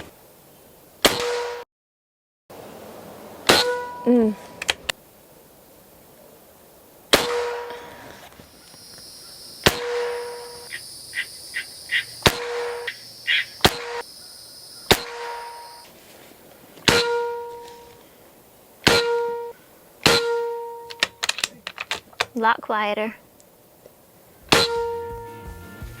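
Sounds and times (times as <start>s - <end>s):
suppressed air rifle shots: 7.1s - 7.9s, 9.6s - 10.7s, 12.2s - 14.1s, 14.9s - 15.8s, 16.8s - 17.8s, 18.8s - 21.3s, 24.5s - 25.0s.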